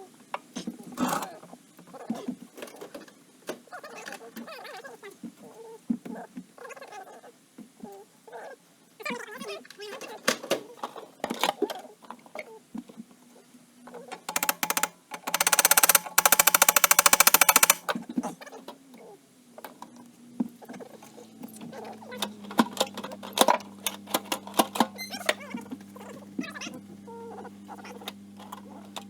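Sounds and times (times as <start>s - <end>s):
clicks and metal knocks: 14.3s - 17.9s
rapid even rattling: 14.3s - 17.9s.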